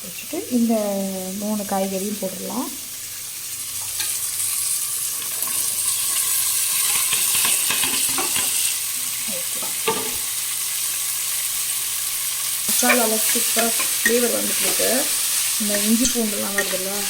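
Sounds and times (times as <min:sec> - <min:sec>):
vegetables sizzling in oil: 0:00.0 - 0:17.0
spoon knocking and scraping pan: 0:06.7 - 0:08.7, 0:09.6 - 0:10.3, 0:12.7 - 0:15.0, 0:15.7 - 0:17.0.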